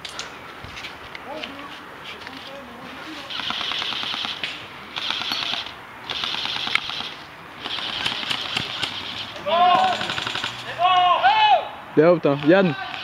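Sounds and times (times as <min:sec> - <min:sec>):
airsoft gun firing bursts: 0:03.3 - 0:10.7.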